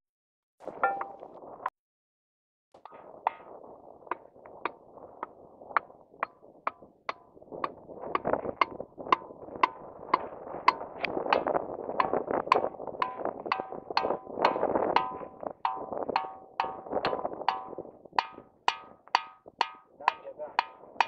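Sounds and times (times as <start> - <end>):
hammer ringing on stone: 0.8 - 1.2, 11.4 - 20.8.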